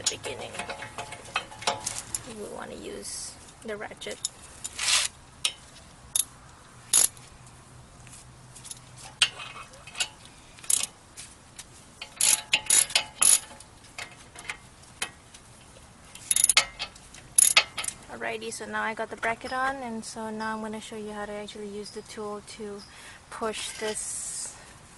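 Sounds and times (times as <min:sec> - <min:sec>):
socket ratchet clicking: 0:16.2 - 0:16.8.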